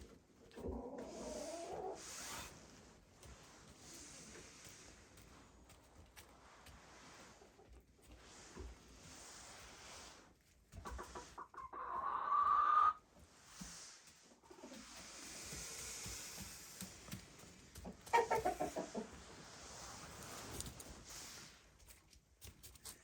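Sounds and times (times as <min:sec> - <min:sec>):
chickens clucking and calling: 0:00.0 - 0:02.3, 0:10.7 - 0:13.0, 0:14.3 - 0:19.9.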